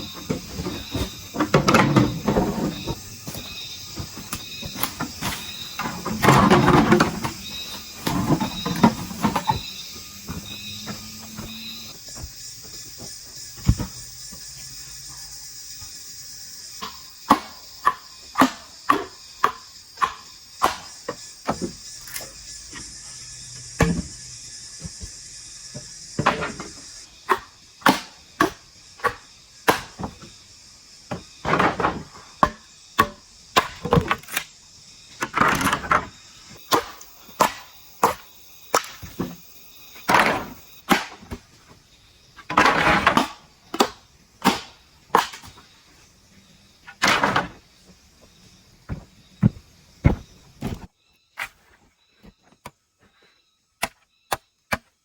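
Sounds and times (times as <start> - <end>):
bamboo being chopped: 16.8 - 21.7, 27.2 - 30.3, 36.6 - 39.3, 40.1 - 41.4, 42.6 - 45.6, 53.8 - 55.0.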